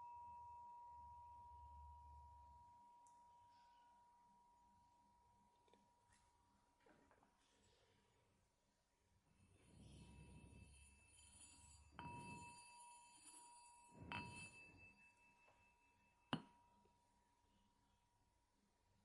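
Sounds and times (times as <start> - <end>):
faint bell strikes: 9.6 - 17.1.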